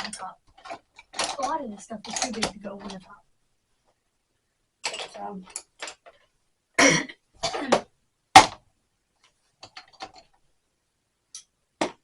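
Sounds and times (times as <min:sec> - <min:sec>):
person coughing: 0:06.8 - 0:07.9.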